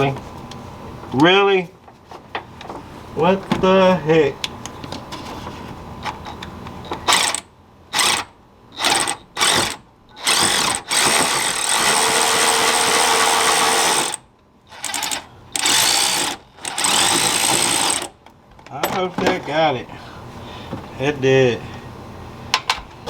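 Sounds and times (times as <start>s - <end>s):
electric ratchet whirring: 7.0s - 18.2s.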